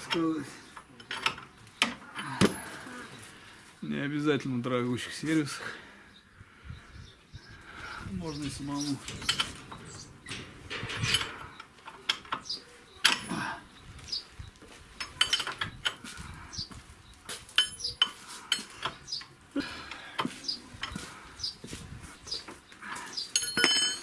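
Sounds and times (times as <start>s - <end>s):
birds chirping: 0.0s - 24.0s
metal wrenches clinking: 8.4s - 13.4s, 15.0s - 16.0s, 17.6s - 19.0s, 23.3s - 24.0s.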